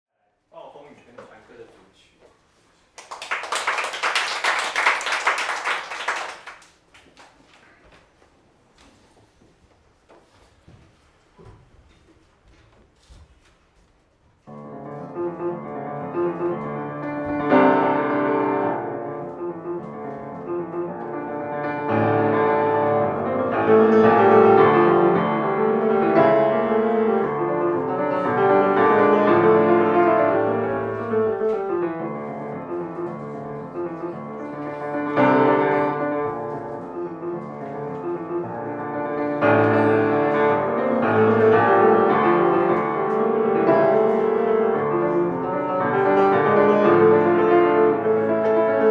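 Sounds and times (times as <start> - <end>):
piano music: 14.5 - 48.9.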